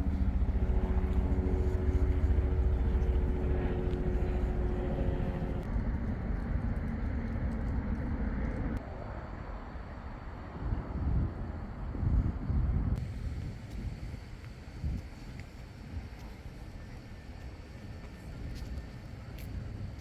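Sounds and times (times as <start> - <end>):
engine hum: 0.0 - 8.8
low engine rumble: 0.0 - 8.8.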